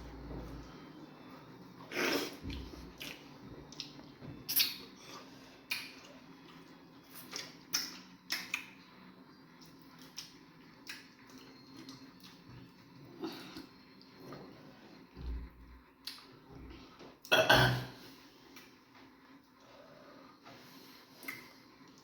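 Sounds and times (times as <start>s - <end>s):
wet chewing and lip-smacking: 5.6s - 8.8s.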